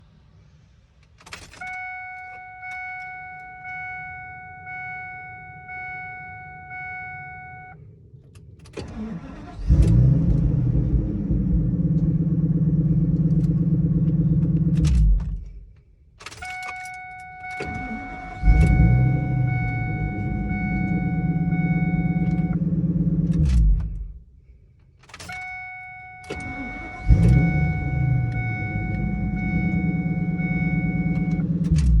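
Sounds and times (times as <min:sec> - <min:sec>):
engine starting and running: 0:07.7 - 0:16.7, 0:17.4 - 0:25.4, 0:26.1 - 0:32.0.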